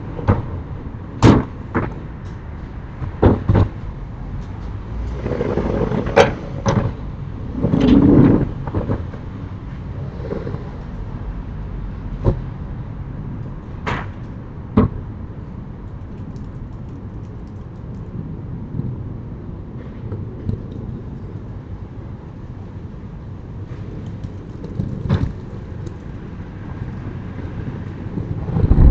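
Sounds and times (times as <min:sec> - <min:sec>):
low rumble: 0:27.6 - 0:28.9.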